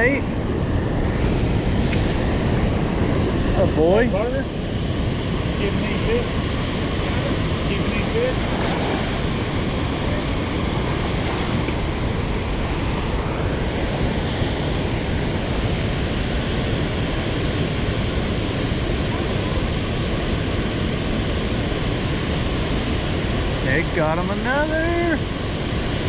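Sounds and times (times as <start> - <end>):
heavy water rushing: 0.0 - 26.0.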